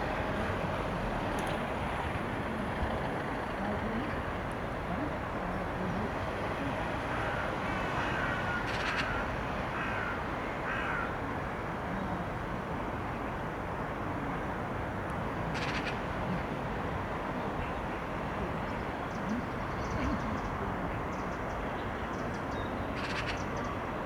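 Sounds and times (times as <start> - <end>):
crow cawing: 8.0 - 9.2, 9.8 - 11.1.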